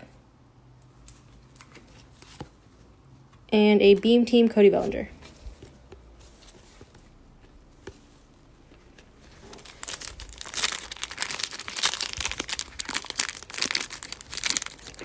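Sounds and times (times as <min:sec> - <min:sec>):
card pack wrapper crinkling and tearing: 0:09.3 - 0:15.0.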